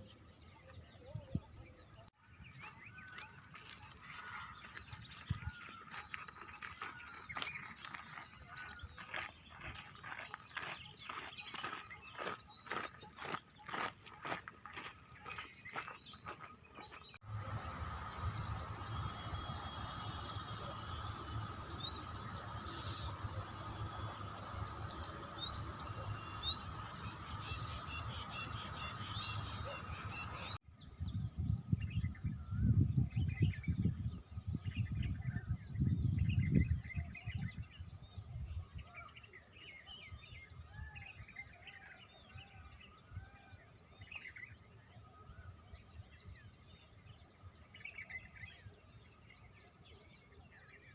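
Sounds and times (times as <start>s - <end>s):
birds chirping and calling: 0.0s - 30.6s
outdoor background noise: 0.0s - 50.9s
low rumble: 17.2s - 31.6s.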